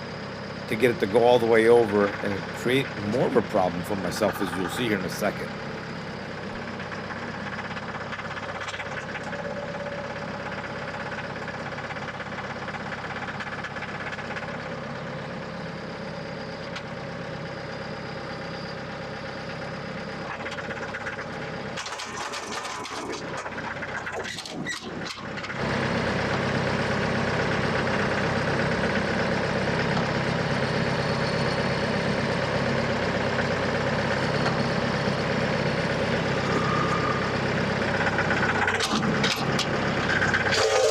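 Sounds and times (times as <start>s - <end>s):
diesel tractor engine under load: 0.0s - 40.9s
clunks: 37.8s - 40.9s.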